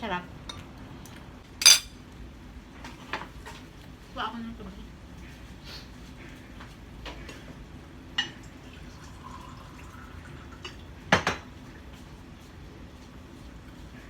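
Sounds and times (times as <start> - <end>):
glass clinking: 1.6 - 1.9
water pouring into glass: 8.9 - 10.2.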